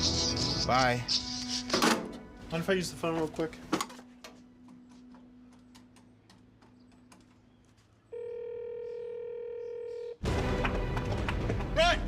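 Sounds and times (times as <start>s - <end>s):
electronic telephone tone: 8.1s - 10.2s.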